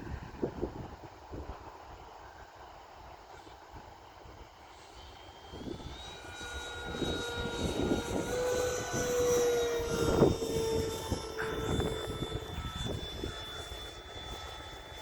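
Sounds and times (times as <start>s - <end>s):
wind on microphone: 0.0s - 2.0s, 5.4s - 15.0s
model jet fan whine: 0.0s - 15.0s.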